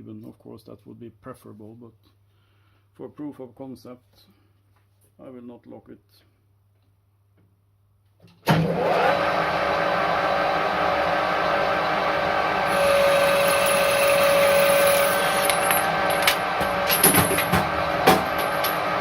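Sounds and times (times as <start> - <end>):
lathe whining: 8.8 - 19.0.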